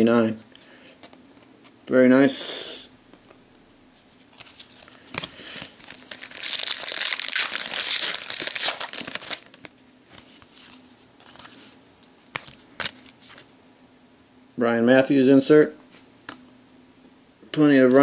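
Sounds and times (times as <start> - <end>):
card pack wrapper tearing and crinkling: 4.3 - 9.8.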